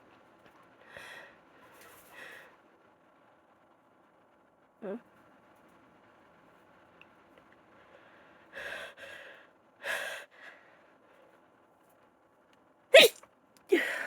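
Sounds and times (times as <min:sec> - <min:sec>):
woman gasping breaths: 0:13.0 - 0:14.0
woman sneezing: 0:13.0 - 0:14.0.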